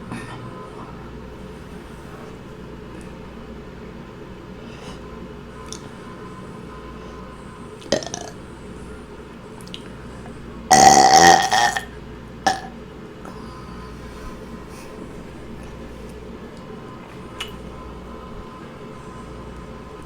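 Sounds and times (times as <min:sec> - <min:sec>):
woman burping: 0:10.7 - 0:11.9, 0:12.5 - 0:12.7.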